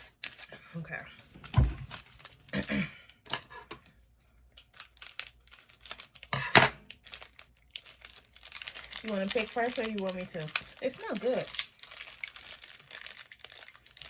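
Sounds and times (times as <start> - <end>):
plastic packaging crinkling: 1.3 - 2.7, 4.6 - 14.0
plastic ripping: 4.6 - 14.0.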